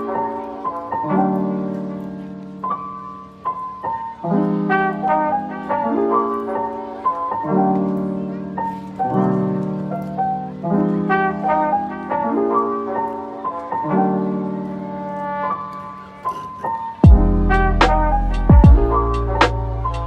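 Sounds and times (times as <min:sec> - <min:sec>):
lofi hip-hop music: 0:16.9 - 0:20.0.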